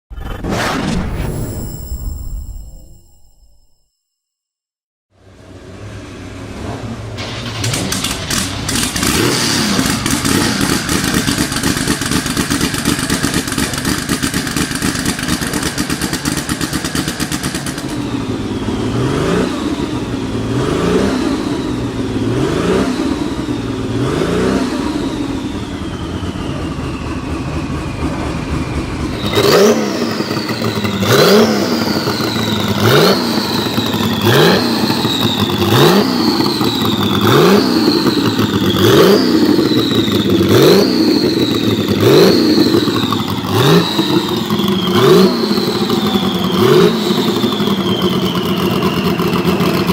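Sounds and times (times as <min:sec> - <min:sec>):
race car engine revving: 0:05.2 - 0:49.9
exhaust cracking: 0:06.3 - 0:49.9
turbo whistle: 0:14.3 - 0:49.9.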